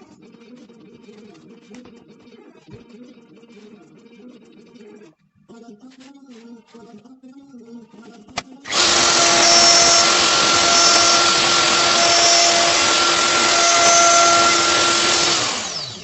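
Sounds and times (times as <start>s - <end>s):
electric machine whirring: 8.7s - 16.0s.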